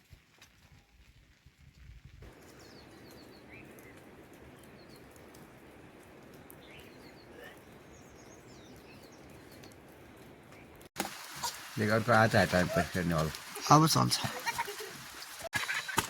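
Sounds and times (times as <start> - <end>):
rainfall hiss: 1.8 - 9.5, 11.0 - 16.0
small birds chirping: 2.3 - 13.7.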